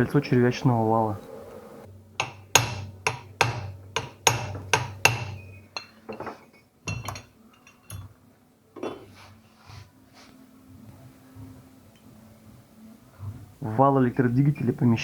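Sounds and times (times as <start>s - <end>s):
hammer tapping on metal: 2.2s - 6.2s
metal parts and tools clinking: 4.0s - 8.2s.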